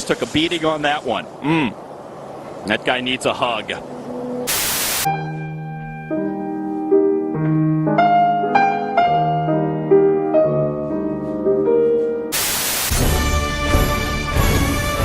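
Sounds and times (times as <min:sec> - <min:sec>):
gentle piano music: 0:02.8 - 0:04.5, 0:05.1 - 0:12.4
loud noisy burst: 0:04.5 - 0:05.1, 0:12.3 - 0:13.4.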